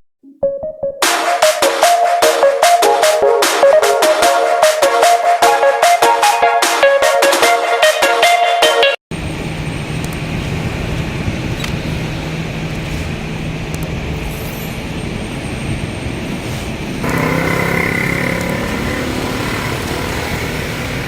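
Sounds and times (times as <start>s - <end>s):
traffic rumble: 9.1s - 21.0s
nearby engine hum: 17.0s - 21.0s.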